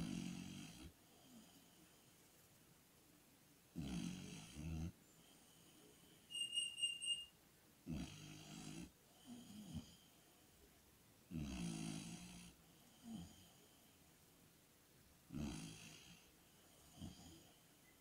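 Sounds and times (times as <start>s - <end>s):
dog snoring: 0.0s - 2.1s, 3.7s - 6.1s, 7.8s - 10.2s, 11.3s - 13.9s, 15.3s - 17.6s
high whistling tone: 6.3s - 7.3s.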